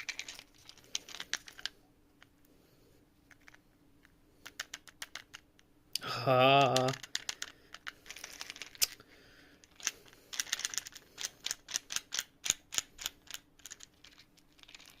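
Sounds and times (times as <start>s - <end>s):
plastic puzzle pieces clicking: 0.0s - 1.7s, 4.4s - 5.6s, 6.6s - 9.0s, 9.6s - 15.0s.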